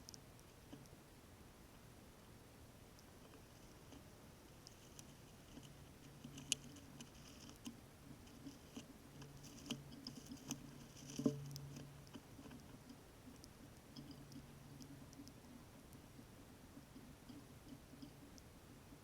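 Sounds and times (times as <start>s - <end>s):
squirrel chewing and cracking seeds: 2.9s - 18.6s.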